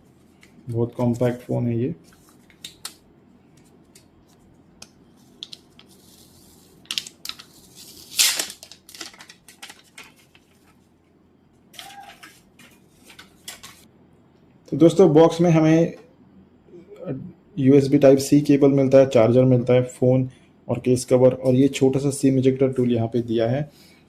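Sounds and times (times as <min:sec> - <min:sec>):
packaging rustling: 0:05.2 - 0:10.9.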